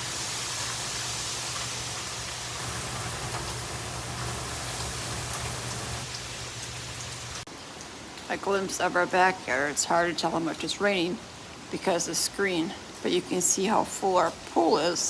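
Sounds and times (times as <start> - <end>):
heavy rain in strong wind: 1.8 - 11.7.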